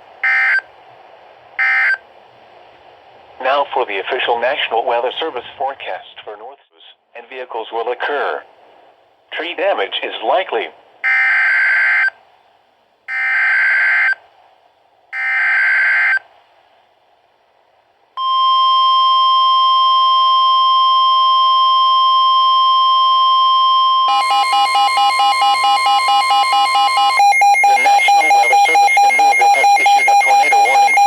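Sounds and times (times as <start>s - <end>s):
pulsing alarm tone: 18.2s - 31.0s.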